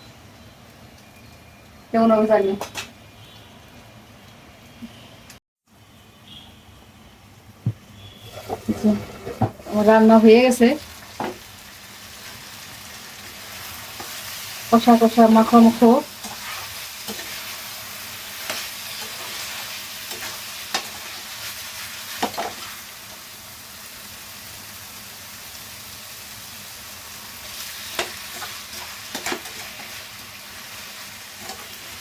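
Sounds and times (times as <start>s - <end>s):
curry sizzling in a pan: 8.0s - 32.0s.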